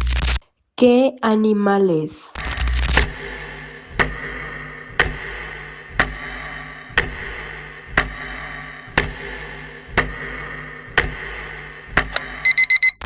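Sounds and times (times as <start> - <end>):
clock ticking: 3.0 - 12.9.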